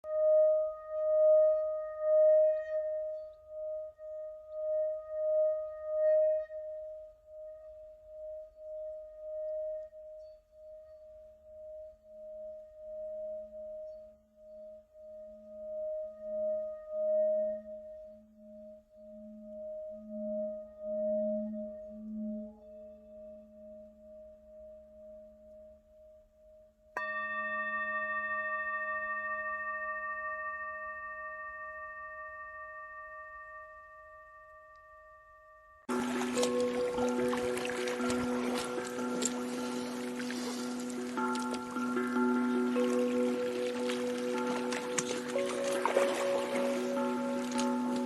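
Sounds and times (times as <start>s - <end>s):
wavering ringing tone: 0.0s - 25.9s, 27.0s - 48.0s
lower tone: 0.0s - 48.0s.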